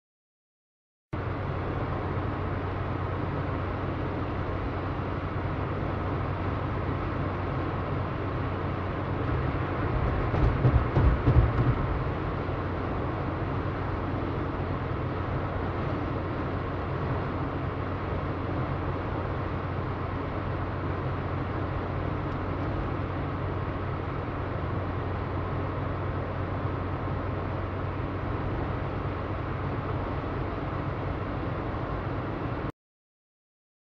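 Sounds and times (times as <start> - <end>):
car engine and road noise: 1.2 - 32.7
low thumps: 10.0 - 12.2.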